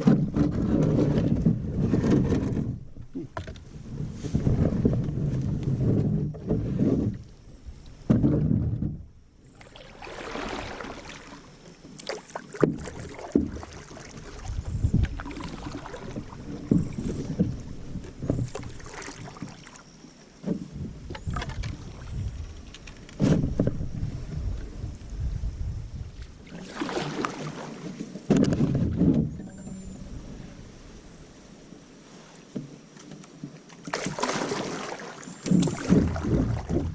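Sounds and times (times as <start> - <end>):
paddle splashing and knocking: 0.0 - 24.9, 26.2 - 30.3, 32.5 - 36.9
moving water: 0.0 - 36.9.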